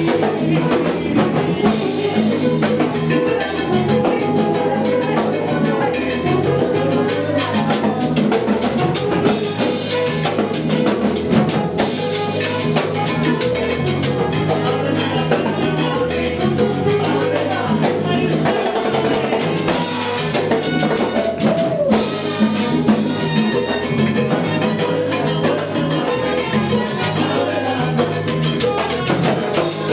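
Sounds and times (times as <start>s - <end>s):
drum kit and percussion beat: 0.0s - 29.9s
salsa band playing: 0.0s - 29.9s.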